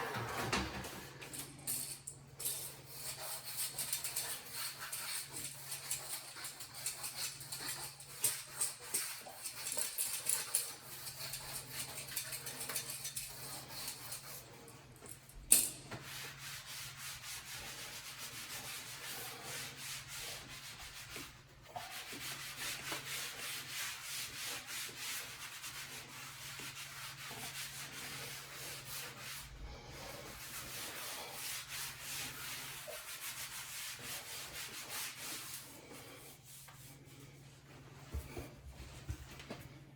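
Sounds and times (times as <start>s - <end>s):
abrasive rubbing on vinyl floor: 15.9s - 39.6s.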